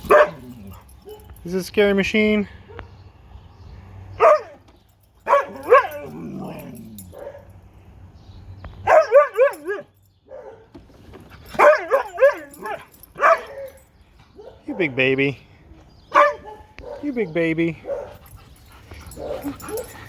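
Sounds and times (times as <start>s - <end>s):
dog barking and yowling: 0.0s - 1.3s, 4.2s - 4.6s, 5.2s - 7.5s, 8.8s - 10.7s, 11.5s - 13.8s, 16.1s - 17.1s, 17.8s - 18.3s, 19.1s - 20.0s.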